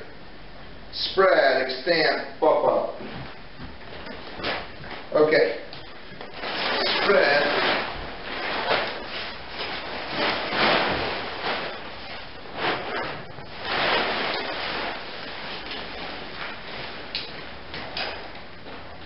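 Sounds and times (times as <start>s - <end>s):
tent fabric rustling: 3.9s - 5.4s, 6.2s - 18.8s.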